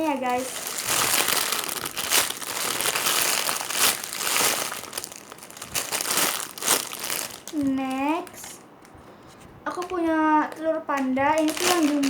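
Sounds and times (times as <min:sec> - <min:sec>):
squishy toy rustling and crackling: 0:00.0 - 0:09.0, 0:09.7 - 0:12.0.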